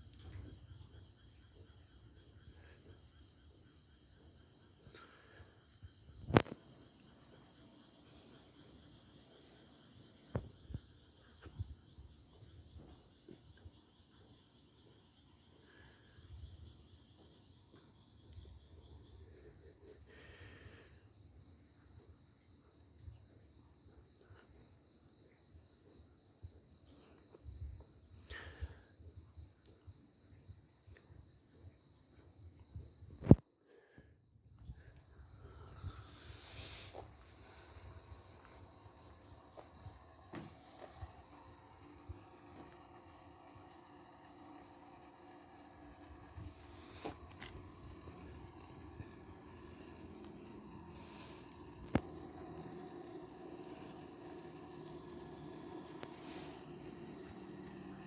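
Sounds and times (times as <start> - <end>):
crickets trilling: 0.0 - 58.0
small clicks: 49.7 - 52.8.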